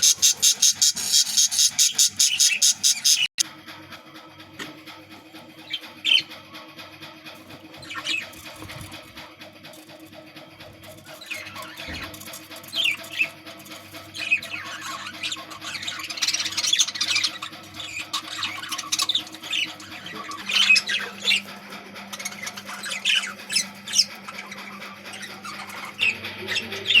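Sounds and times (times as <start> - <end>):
budgerigars chattering: 0.0 - 3.4, 11.1 - 21.5, 22.1 - 27.0.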